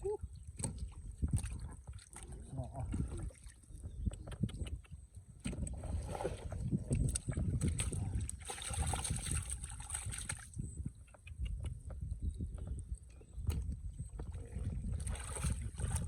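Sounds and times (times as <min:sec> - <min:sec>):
shallow water splashing: 0:05.5 - 0:10.6, 0:14.4 - 0:16.0.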